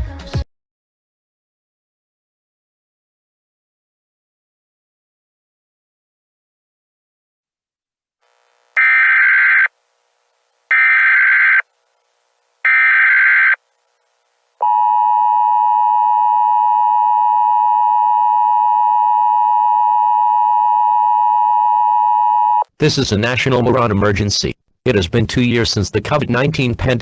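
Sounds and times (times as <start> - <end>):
digital data header bursts: 8.7 - 9.7, 10.7 - 11.6, 12.6 - 13.6
two-tone attention signal: 8.8 - 9.7, 10.7 - 11.6, 12.7 - 13.6.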